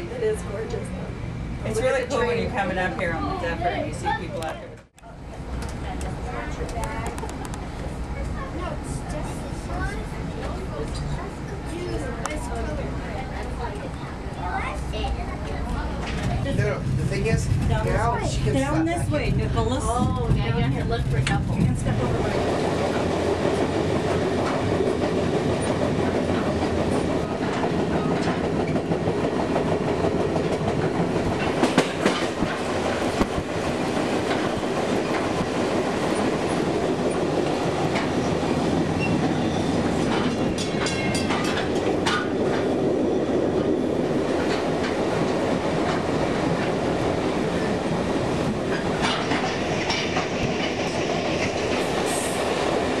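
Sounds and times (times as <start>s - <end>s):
train rumble: 0.0s - 53.0s
wheels clacking over rail joints: 19.3s - 53.0s.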